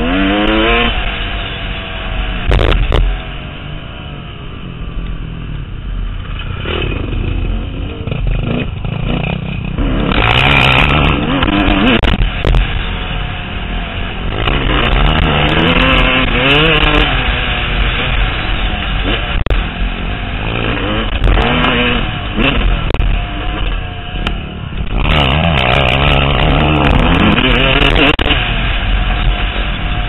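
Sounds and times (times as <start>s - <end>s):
dirt bike engine revving: 0.0s - 4.6s, 6.4s - 30.0s.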